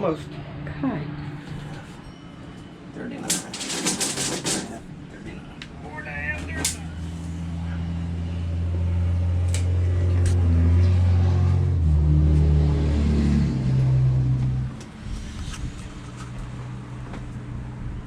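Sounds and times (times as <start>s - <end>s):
vehicle engine running: 4.1s - 18.0s.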